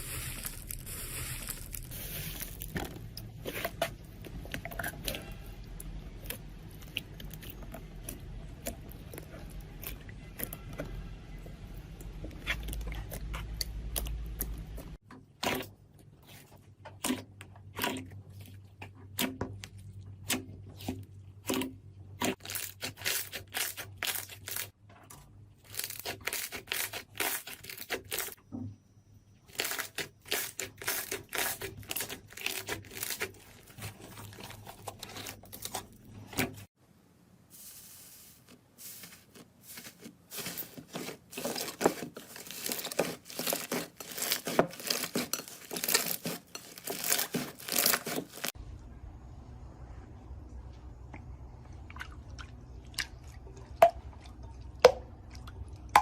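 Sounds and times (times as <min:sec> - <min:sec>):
slime crackling and popping: 0:39.8 - 0:48.5.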